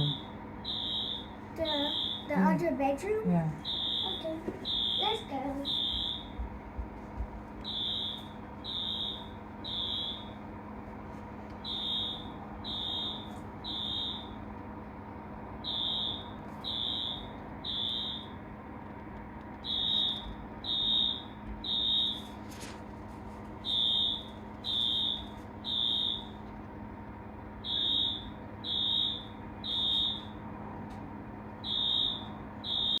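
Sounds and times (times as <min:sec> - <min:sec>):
fire alarm beeps: 0:00.0 - 0:02.4, 0:03.6 - 0:06.5, 0:07.6 - 0:10.5, 0:11.6 - 0:14.5, 0:15.6 - 0:18.4, 0:19.6 - 0:22.4, 0:23.6 - 0:26.5, 0:27.6 - 0:30.4, 0:31.6 - 0:33.0
steady low hum: 0:00.0 - 0:33.0.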